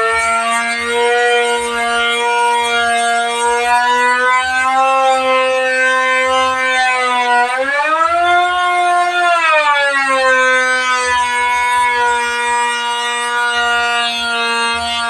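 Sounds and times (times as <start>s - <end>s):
woodworking machine whining: 10.4s - 15.0s.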